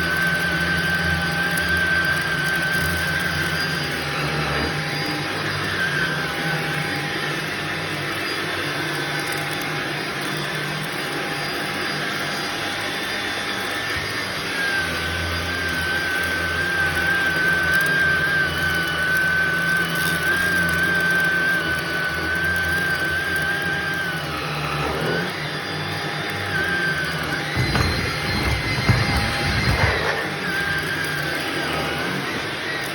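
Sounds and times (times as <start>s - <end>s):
vacuum cleaner running: 0.0s - 32.9s
high whistling whine: 11.4s - 32.9s.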